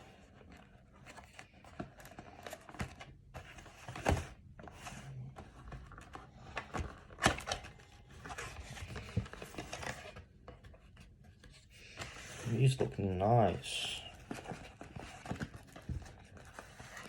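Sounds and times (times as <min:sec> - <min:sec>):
card packs rustling: 0:00.0 - 0:17.0.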